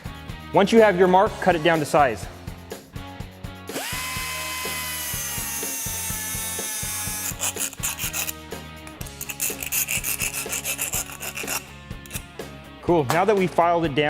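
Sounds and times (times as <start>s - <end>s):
power tool whining: 3.7s - 8.3s
hand file rasping on metal: 4.3s - 8.4s, 9.1s - 12.3s.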